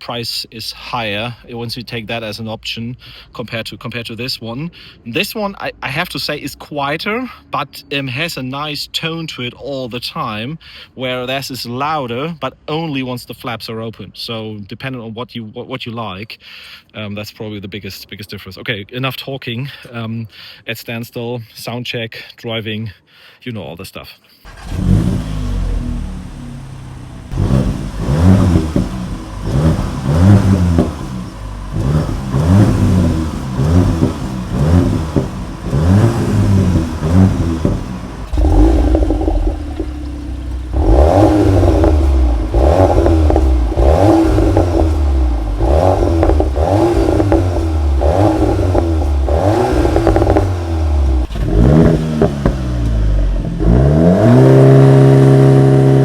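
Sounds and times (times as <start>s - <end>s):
car engine revving: 24.5s - 56.0s.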